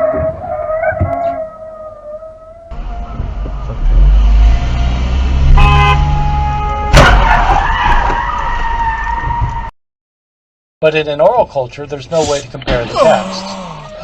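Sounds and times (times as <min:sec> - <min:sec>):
car road noise: 0:00.0 - 0:09.7
car horn honk: 0:05.4 - 0:07.5
loud sudden bang: 0:06.9 - 0:08.2.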